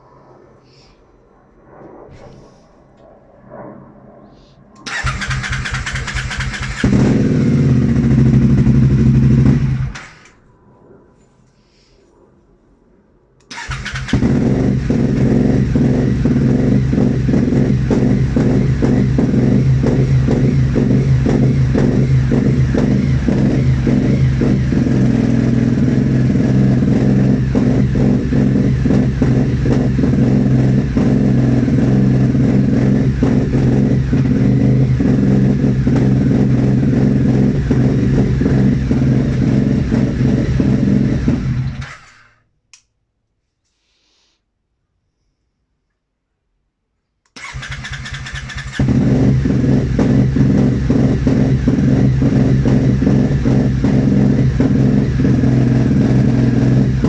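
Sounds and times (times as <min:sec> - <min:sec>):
motorcycle engine droning: 0:04.8 - 0:11.4, 0:13.4 - 0:42.4, 0:47.4 - 0:57.0.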